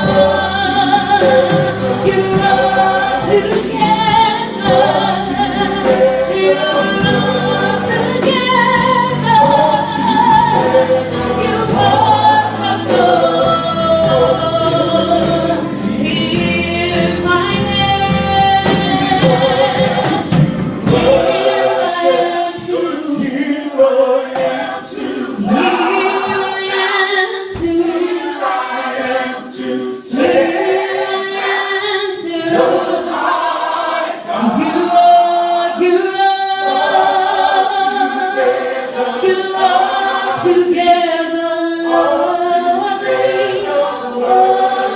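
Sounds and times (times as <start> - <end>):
low accompaniment: 0.0 - 23.0
choir singing: 0.0 - 44.9.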